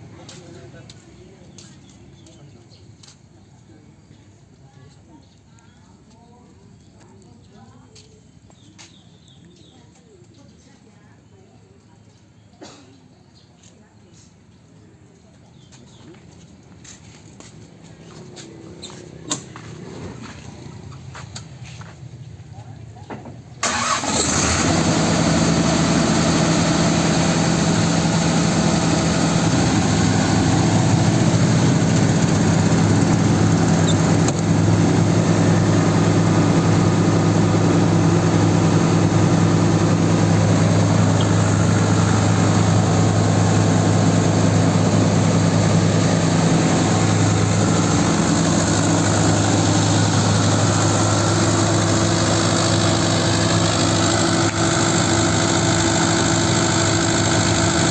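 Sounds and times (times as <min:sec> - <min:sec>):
diesel generator engine running: 0:23.6 - 0:57.9.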